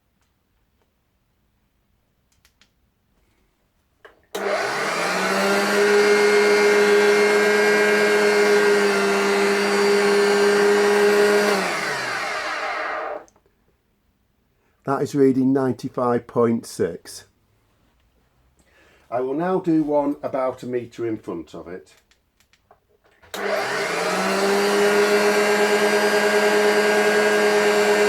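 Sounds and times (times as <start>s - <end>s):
vacuum cleaner motor whining: 4.4s - 13.3s, 23.3s - 28.0s.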